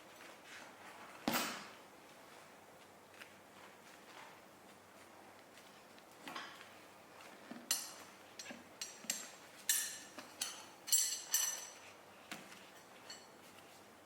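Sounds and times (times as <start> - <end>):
tire spoons clinking on metal: 7.7 - 11.9.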